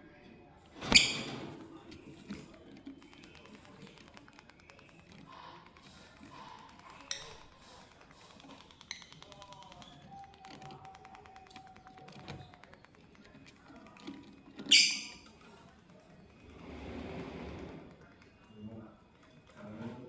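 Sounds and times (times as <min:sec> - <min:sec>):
bird beak pecking taps: 0:02.4 - 0:16.4
shrill bird chirp: 0:14.7 - 0:15.2.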